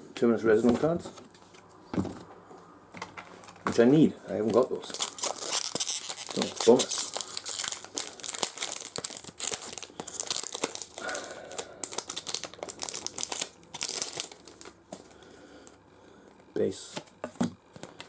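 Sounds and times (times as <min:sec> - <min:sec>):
wrappers crinkling and tearing: 0:03.4 - 0:14.8.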